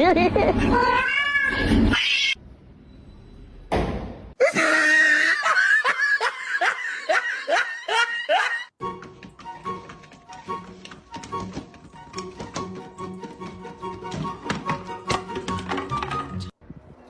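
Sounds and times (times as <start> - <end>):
person laughing in bursts: 4.4 - 8.7.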